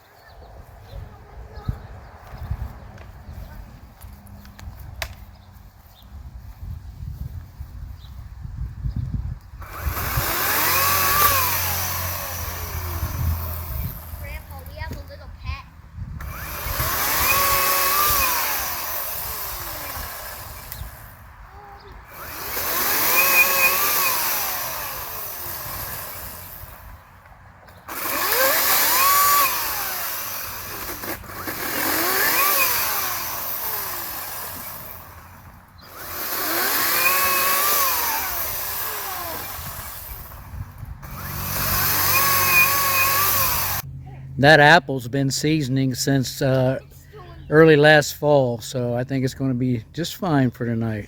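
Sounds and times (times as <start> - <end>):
battery chainsaw motor whine: 9.6 - 14.8, 16.2 - 21.2, 21.9 - 27.0, 27.7 - 43.9.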